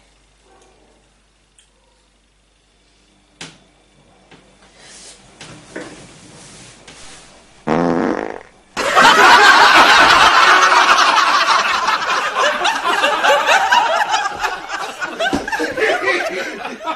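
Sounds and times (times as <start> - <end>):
crowd laughing loudly: 8.8 - 16.9.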